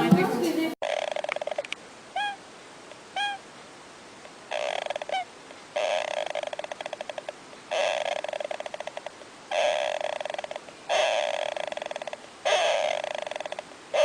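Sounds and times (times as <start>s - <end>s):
animal chirping and trilling: 0.8s - 2.4s, 3.2s - 3.4s, 4.5s - 14.0s.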